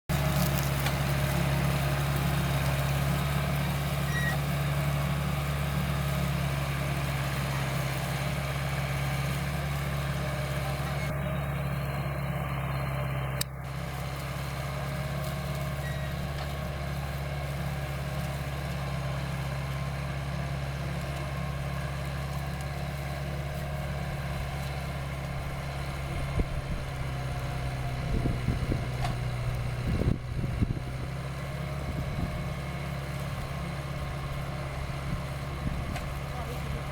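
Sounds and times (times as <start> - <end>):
tractor diesel engine under load: 0.0 - 36.9
irregular crackling: 0.1 - 1.6.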